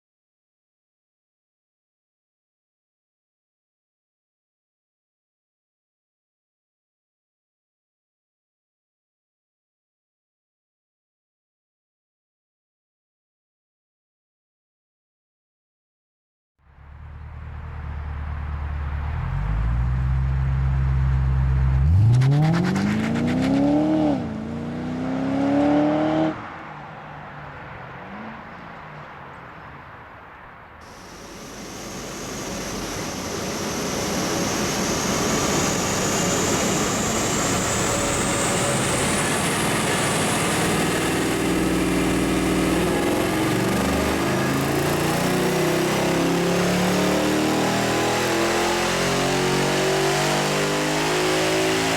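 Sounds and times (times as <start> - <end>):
car engine revving on take-off: 16.8 - 26.6, 30.8 - 51.9
high whine: 30.8 - 45.8
engine running on a dyno: 30.8 - 51.9.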